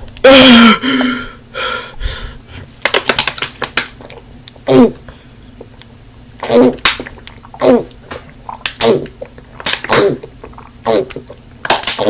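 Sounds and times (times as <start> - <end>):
person hiccuping: 0.2 - 1.3.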